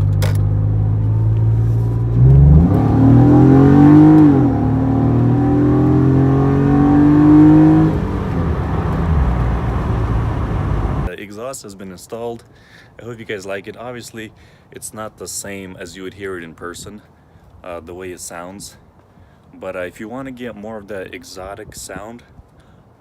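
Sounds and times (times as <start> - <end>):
car engine accelerating: 0.0 - 11.1.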